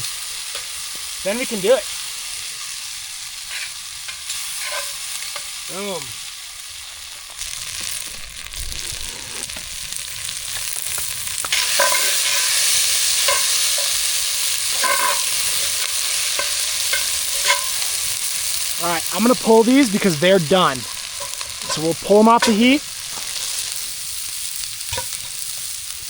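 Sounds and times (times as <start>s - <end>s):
vegetables sizzling in oil: 0.0s - 26.0s
utensil stirring against pan: 3.4s - 5.5s, 10.3s - 26.0s.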